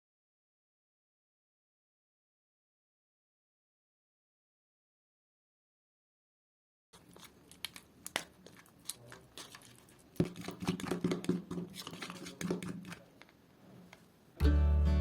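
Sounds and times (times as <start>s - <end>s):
crinkling and tearing: 7.0s - 13.4s.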